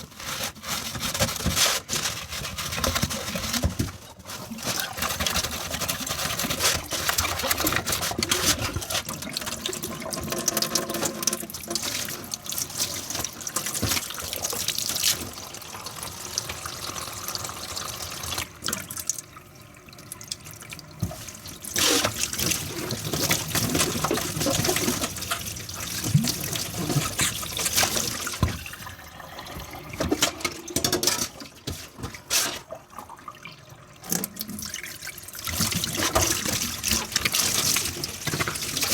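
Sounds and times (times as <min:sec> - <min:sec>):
tap water running into sink: 0:01.3 - 0:38.9
dishes clinking and knocking: 0:30.0 - 0:31.5.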